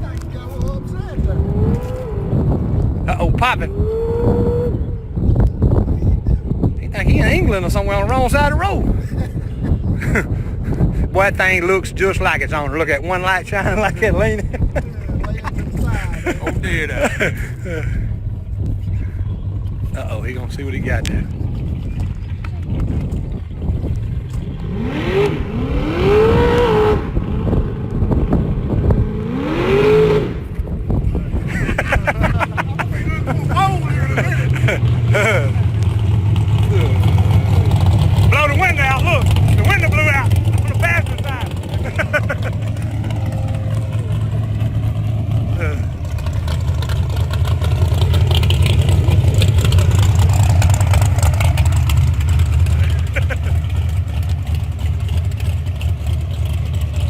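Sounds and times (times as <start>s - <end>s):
car engine accelerating hard: 0.0s - 5.3s, 19.6s - 57.0s.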